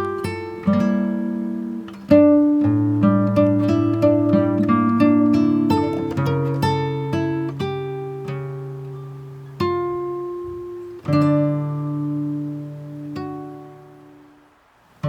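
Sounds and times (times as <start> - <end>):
acoustic guitar plucked notes: 0.0 - 14.6.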